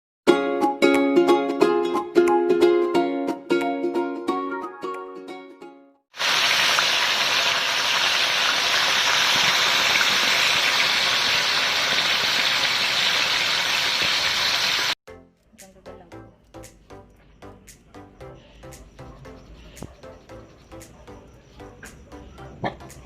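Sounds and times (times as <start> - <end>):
plucked string music: 0.3 - 6.0.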